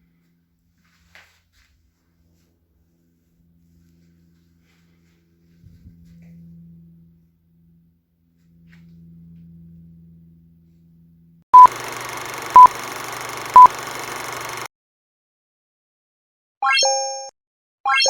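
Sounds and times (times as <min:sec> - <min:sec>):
short electronic beeps: 0:11.6 - 0:14.7.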